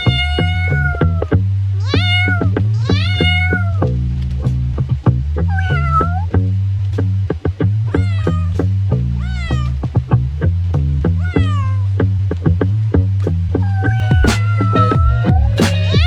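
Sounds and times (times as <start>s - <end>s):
cat meowing: 0.0s - 3.8s, 9.2s - 9.7s, 11.2s - 11.8s, 13.6s - 14.9s
background music with bass: 0.0s - 16.0s.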